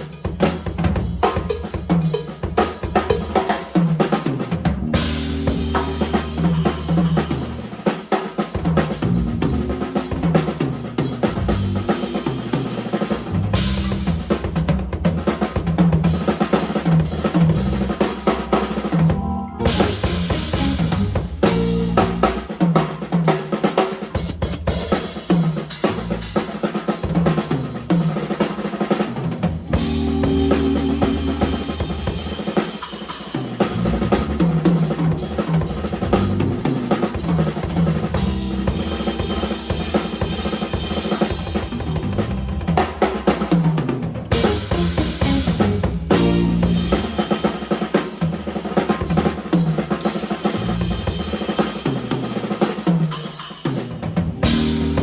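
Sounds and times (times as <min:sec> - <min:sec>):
drum kit solo: 0:00.0 - 0:55.0.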